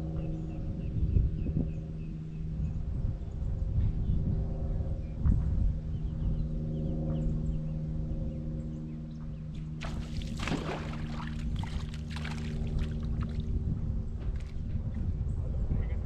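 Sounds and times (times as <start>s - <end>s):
boat motor running: 9.4s - 15.1s
water splashing and spraying: 9.8s - 13.5s.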